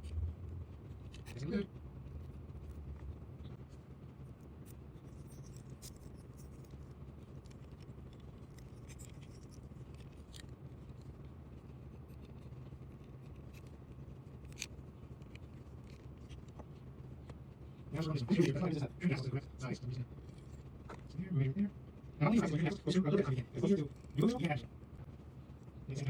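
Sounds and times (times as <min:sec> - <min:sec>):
steady low hum: 0:00.0 - 0:26.0
clicks and scrapes of small parts: 0:00.9 - 0:01.4, 0:04.4 - 0:18.8, 0:20.1 - 0:21.1.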